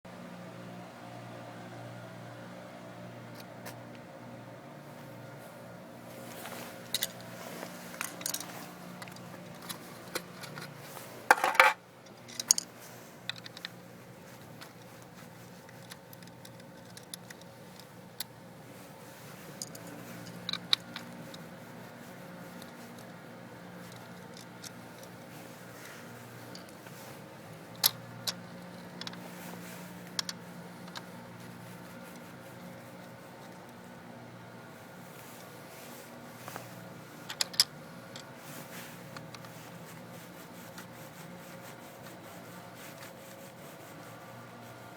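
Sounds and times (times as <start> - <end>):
faint steady hum: 0.1 - 44.9
rattling scrape: 6.2 - 12.6
metal parts clicking and clinking: 6.8 - 7.3, 7.9 - 13.8, 14.5 - 18.3, 19.5 - 21.4, 27.7 - 29.2, 37.2 - 38.3.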